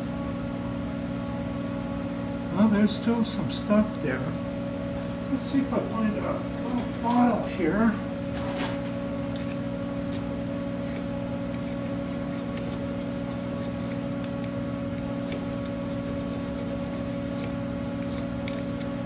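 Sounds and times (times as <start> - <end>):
steady machine hum: 0.0 - 19.0
hand file scraping steel: 10.8 - 14.0, 15.2 - 18.9.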